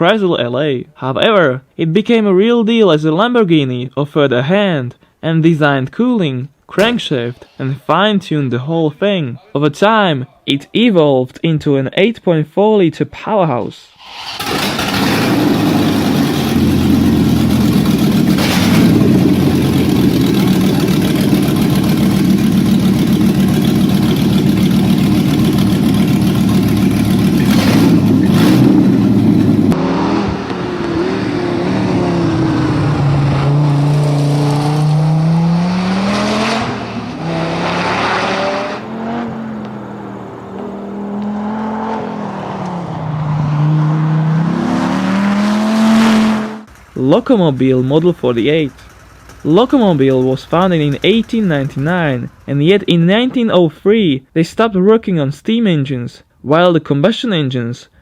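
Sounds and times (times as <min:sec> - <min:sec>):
car engine revving loudly: 0:14.0 - 0:46.7.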